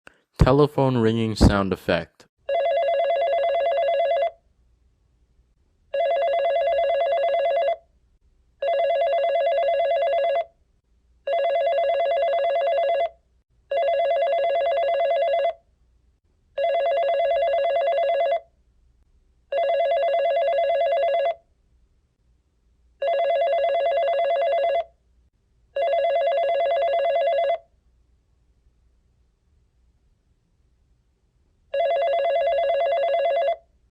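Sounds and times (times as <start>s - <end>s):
telephone ringing: 2.5s - 4.4s, 5.9s - 7.8s, 8.6s - 10.5s, 11.3s - 15.6s, 16.6s - 18.5s, 19.5s - 21.4s, 23.0s - 24.9s, 25.8s - 27.7s, 31.7s - 33.7s.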